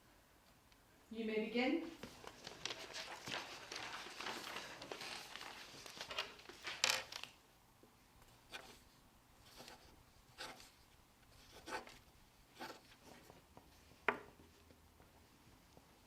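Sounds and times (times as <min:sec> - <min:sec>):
faint scratching and rustling: 0:01.9 - 0:07.3.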